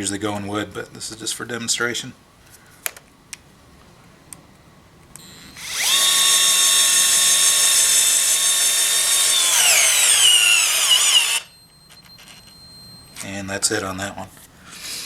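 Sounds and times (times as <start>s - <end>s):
cordless screwdriver motor whining: 5.2s - 11.5s.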